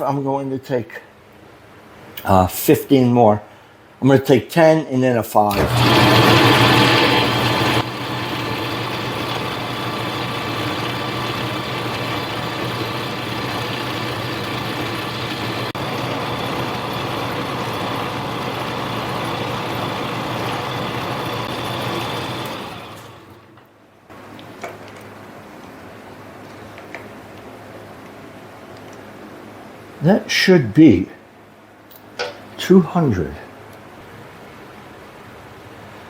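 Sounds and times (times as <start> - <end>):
metal lathe motor whine: 5.5 - 23.5.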